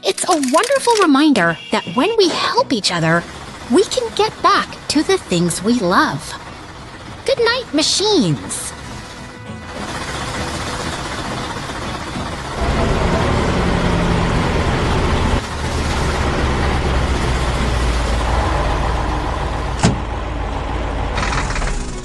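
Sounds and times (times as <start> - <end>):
heavy vehicle engine running: 1.7 - 22.0
loud rushing noise: 8.7 - 22.0.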